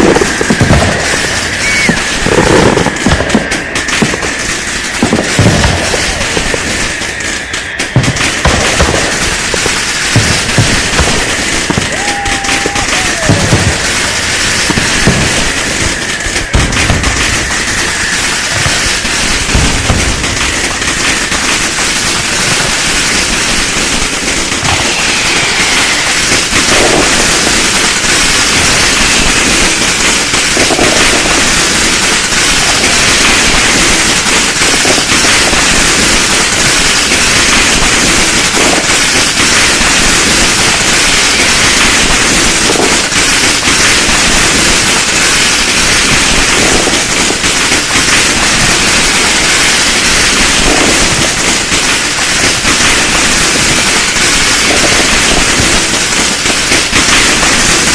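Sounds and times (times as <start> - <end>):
firecrackers crackling: 0.0 - 57.9
faint falling whistles: 1.6 - 2.1.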